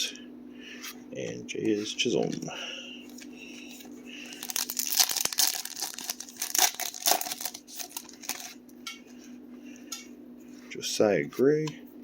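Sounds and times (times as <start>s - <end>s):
foil wrapper crinkling: 4.2s - 8.6s.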